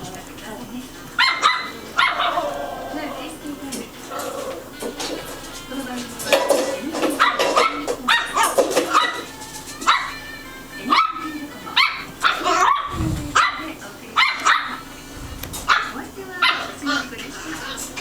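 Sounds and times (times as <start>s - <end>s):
puppy yapping: 1.2s - 3.3s, 6.3s - 17.1s
low thuds: 12.9s - 13.6s, 15.1s - 15.8s.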